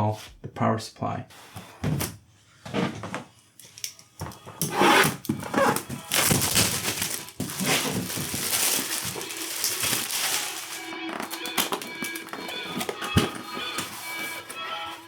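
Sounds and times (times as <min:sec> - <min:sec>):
plastic packaging crinkling: 0:04.6 - 0:15.0.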